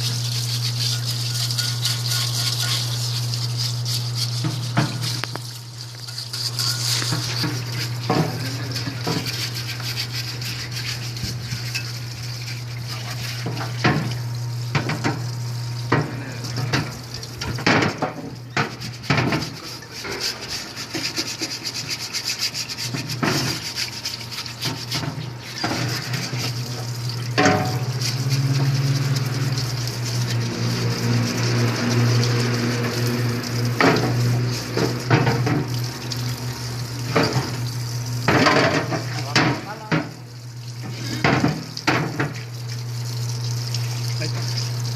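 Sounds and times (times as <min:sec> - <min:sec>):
machine motor hum and hiss: 0:00.0 - 0:14.2, 0:18.7 - 0:40.0.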